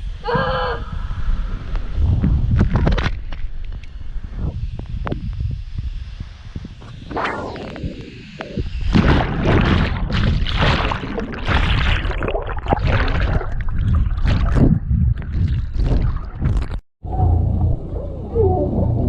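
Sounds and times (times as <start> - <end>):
wind buffeting microphone: 0.8 - 10.5.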